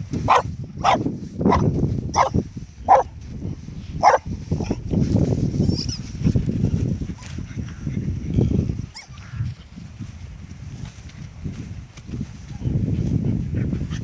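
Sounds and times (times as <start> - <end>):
squeaky ball squeaking: 5.6 - 6.1.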